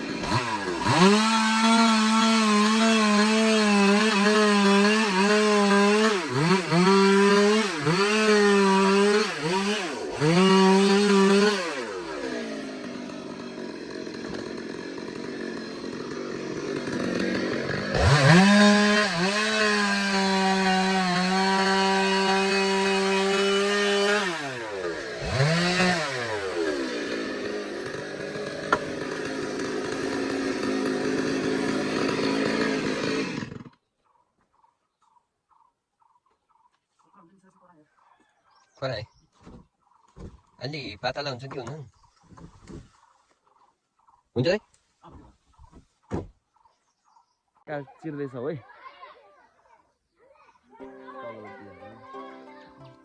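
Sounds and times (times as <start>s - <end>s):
chainsaw cutting log: 0.0s - 33.8s.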